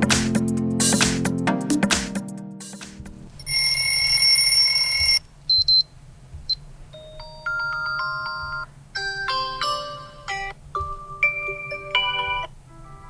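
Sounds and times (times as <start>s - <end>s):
short high beeps: 3.5s - 5.8s
electronic alarm melody: 7.0s - 12.6s.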